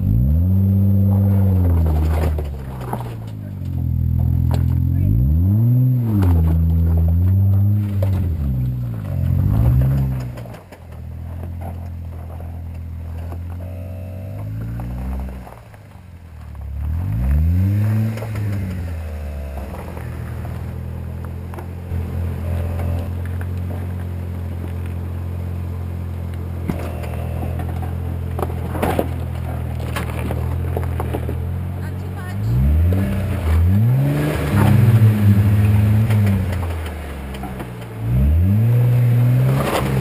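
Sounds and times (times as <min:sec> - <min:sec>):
engine revving: 0:00.0 - 0:10.6, 0:16.7 - 0:23.2, 0:26.6 - 0:40.0.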